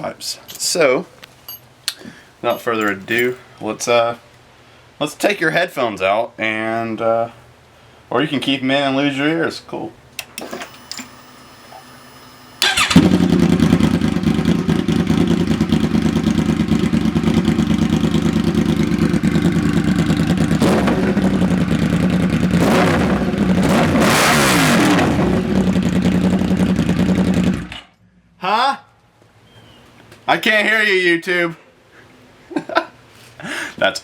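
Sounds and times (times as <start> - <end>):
motorcycle throttle blips: 10.2 - 27.8
loud motorcycle engine idling: 12.1 - 23.6, 25.2 - 27.7.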